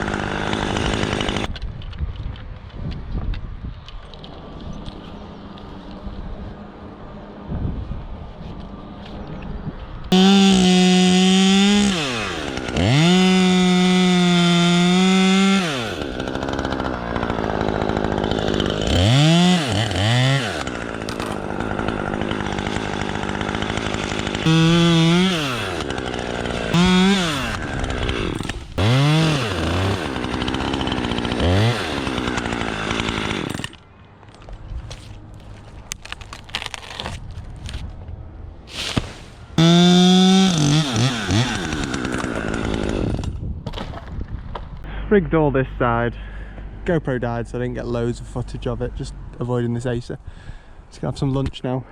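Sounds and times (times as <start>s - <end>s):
chainsaw revving: 0.0s - 1.5s, 10.1s - 33.8s, 39.6s - 43.4s.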